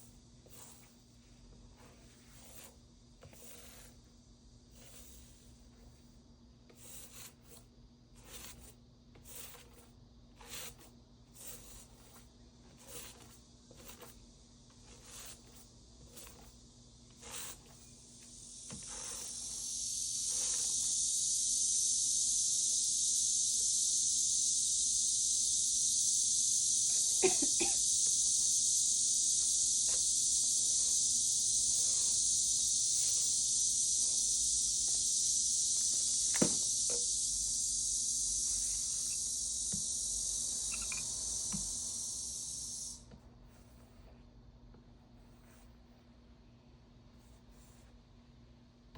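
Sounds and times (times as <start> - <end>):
steady high hiss: 12.8 - 43.1
paintbrush swishes: 29.4 - 35.1.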